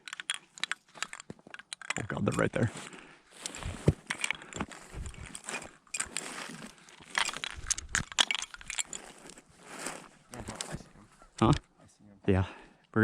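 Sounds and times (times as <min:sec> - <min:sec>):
gear clinking: 0:00.0 - 0:10.8
rustling and crunching through field: 0:02.2 - 0:11.4.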